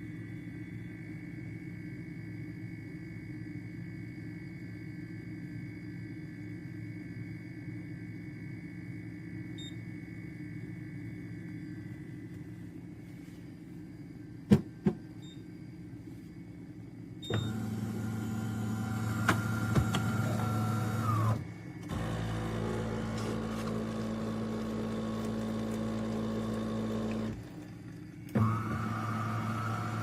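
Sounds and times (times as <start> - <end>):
espresso machine humming: 17.4 - 30.0.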